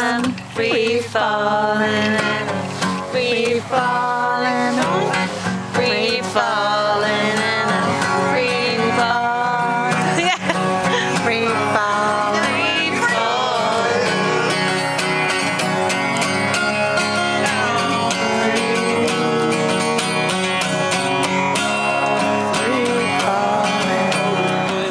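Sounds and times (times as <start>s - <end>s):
acoustic guitar strumming: 0.0s - 24.9s
man singing: 0.0s - 24.9s.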